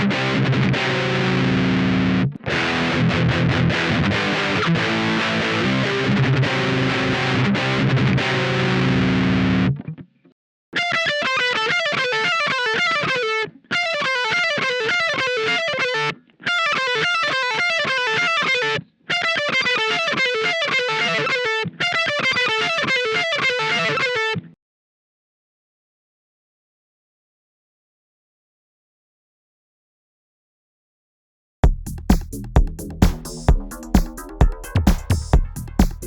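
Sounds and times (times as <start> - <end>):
distorted electric guitar: 0.0 - 9.9, 10.8 - 24.5.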